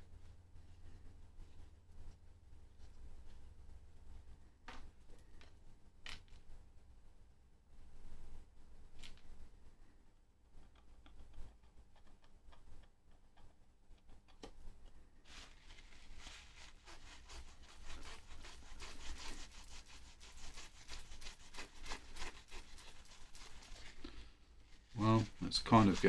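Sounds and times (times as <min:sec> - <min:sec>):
hand scrubbing adhesive: 0:15.3 - 0:24.2, 0:24.8 - 0:26.0.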